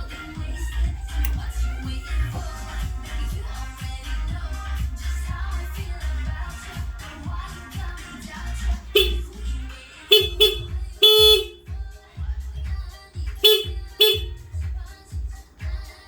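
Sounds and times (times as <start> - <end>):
dance music with steady beat: 0.0 - 16.0
motorcycle horn honks: 9.0 - 9.4, 10.1 - 11.8, 13.4 - 14.4.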